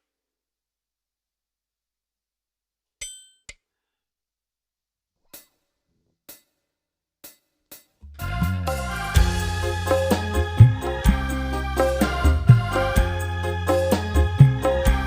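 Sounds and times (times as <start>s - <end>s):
band with drums bass and keyboard: 8.1s - 15.0s.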